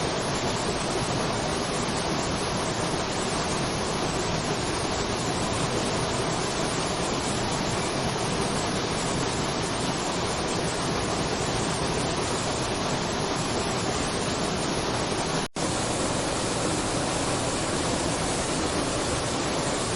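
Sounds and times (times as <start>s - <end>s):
waterfall rushing: 0.0s - 19.9s.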